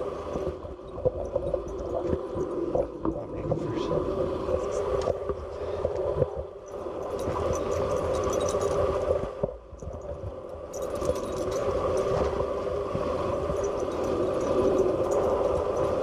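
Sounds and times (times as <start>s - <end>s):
steady droning hum: 0.0s - 16.0s
uneven low rumble: 0.0s - 16.0s.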